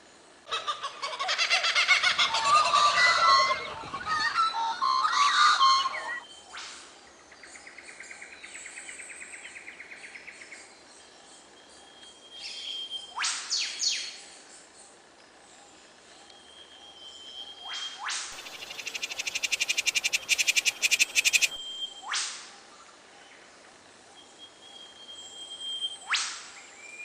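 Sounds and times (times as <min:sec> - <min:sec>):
bird pulsing trill: 0:11.0 - 0:14.2, 0:15.4 - 0:22.1, 0:23.7 - 0:27.0
bird rising whistles: 0:16.8 - 0:22.2, 0:24.4 - 0:27.0
birds chirping: 0:18.4 - 0:21.9.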